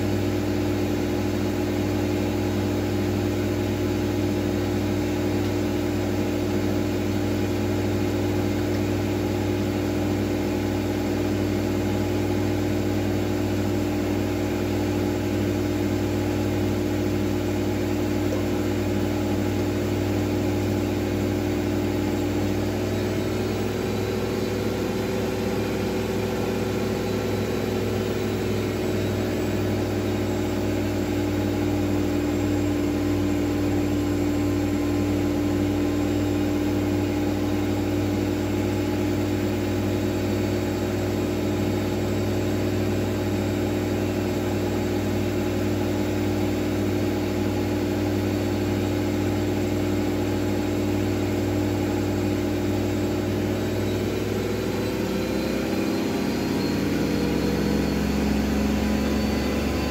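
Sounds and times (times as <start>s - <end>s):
washing machine spinning: 0.0s - 59.9s
higher motor tone: 53.2s - 59.9s.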